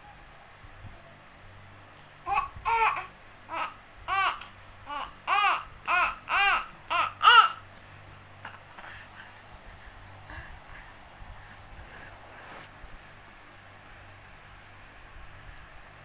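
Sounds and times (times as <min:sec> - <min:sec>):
baby babbling: 0:02.2 - 0:07.6.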